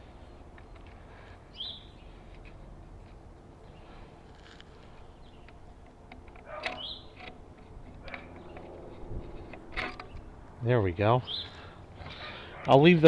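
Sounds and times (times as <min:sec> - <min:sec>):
light clicks of screws loosening: 0:00.1 - 0:10.3
bird chirp: 0:01.5 - 0:02.2, 0:04.9 - 0:05.6, 0:06.4 - 0:07.3, 0:11.2 - 0:12.7.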